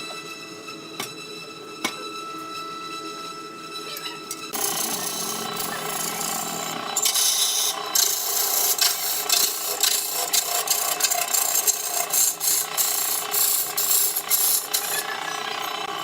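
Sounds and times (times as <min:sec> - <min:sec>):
tool rasping against wood: 0:04.5 - 0:15.1.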